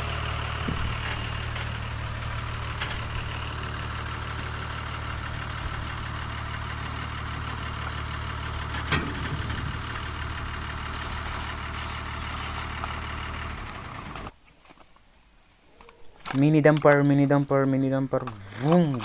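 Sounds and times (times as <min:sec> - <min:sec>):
engine idling: 0:00.0 - 0:14.4.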